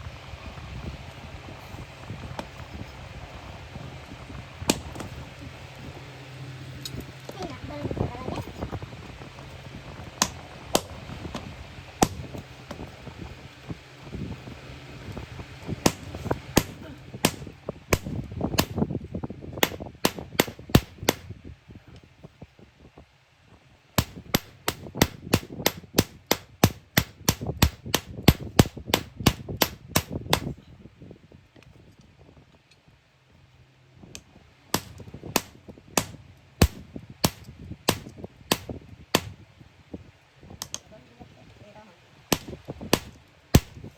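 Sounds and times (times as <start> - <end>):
hammer striking iron: 12.0 - 12.3, 15.8 - 18.8, 19.6 - 21.3, 24.0 - 30.5, 34.8 - 39.4, 42.3 - 43.8.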